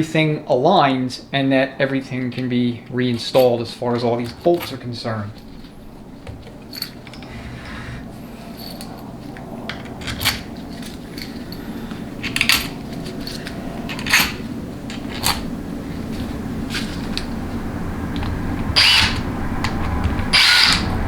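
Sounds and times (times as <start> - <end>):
steady low hum: 0.0 - 21.0
steel bolts clinking on metal: 3.1 - 15.5.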